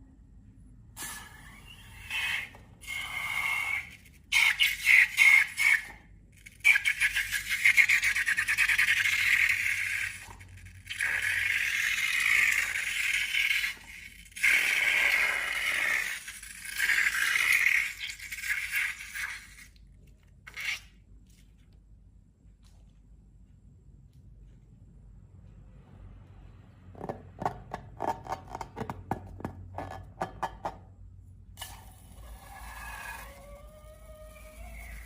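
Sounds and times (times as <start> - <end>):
rubber balloons squeaking: 32.3 - 35.0.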